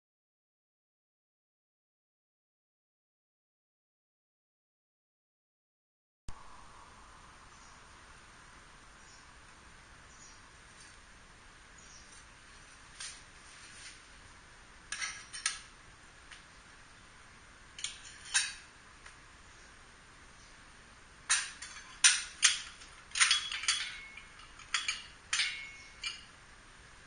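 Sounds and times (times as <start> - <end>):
metallic clinks and taps: 21.3 - 26.3.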